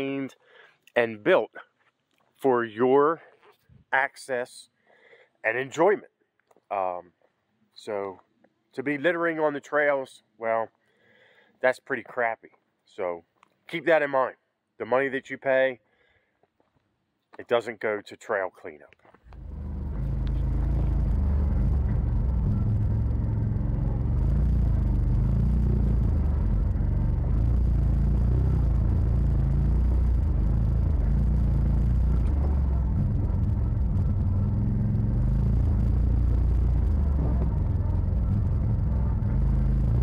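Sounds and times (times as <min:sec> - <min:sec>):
off-road vehicle engine rumble: 0:19.2 - 0:40.0.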